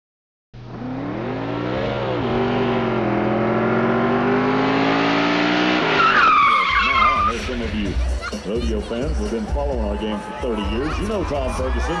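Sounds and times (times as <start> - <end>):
vehicle engine revving: 0.6 - 7.7.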